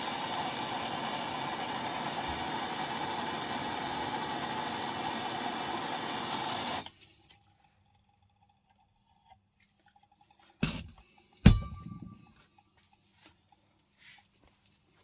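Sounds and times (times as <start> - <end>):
blowtorch flame hissing: 0.0 - 6.9
knocks: 10.6 - 12.3
short metallic ring: 11.5 - 12.4.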